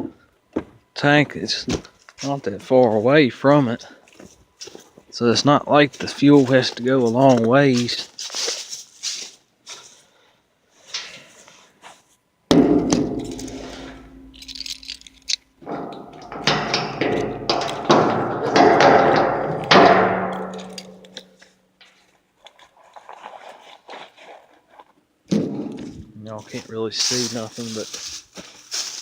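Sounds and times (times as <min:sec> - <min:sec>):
metal clangs on oil tank: 0:12.5 - 0:14.6, 0:15.6 - 0:21.4.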